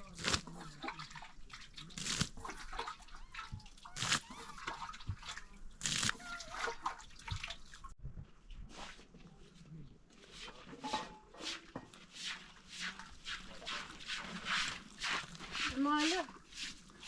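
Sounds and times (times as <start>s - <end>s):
water splashing: 0.0s - 8.0s.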